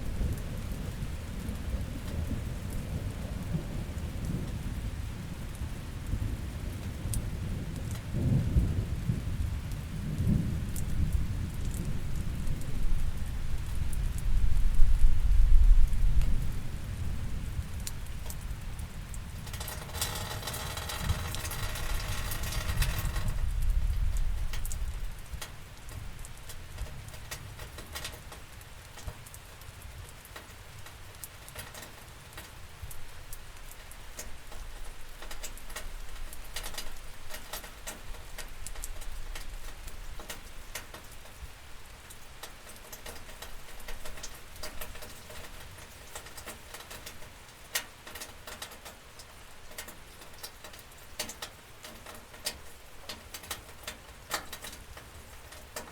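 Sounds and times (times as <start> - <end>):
rain hiss: 0.0 - 55.9
drops ticking on hard surface: 19.5 - 23.4.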